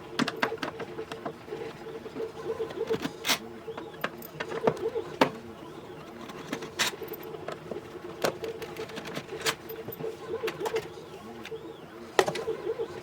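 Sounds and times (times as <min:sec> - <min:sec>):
steady hum: 0:00.0 - 0:13.0
small parts and tools clicking: 0:06.2 - 0:11.6.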